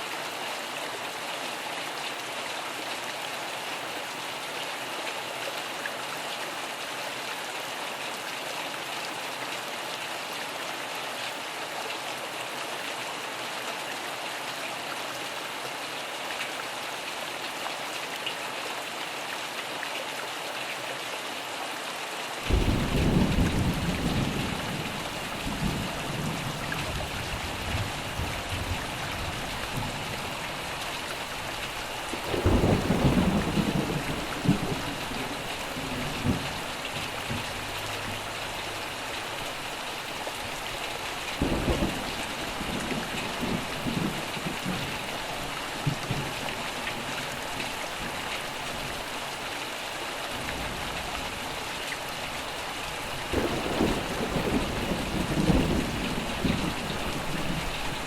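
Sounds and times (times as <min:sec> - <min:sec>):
rain falling: 0:00.0 - 0:58.0
thunder rumbling: 0:53.3 - 0:58.0.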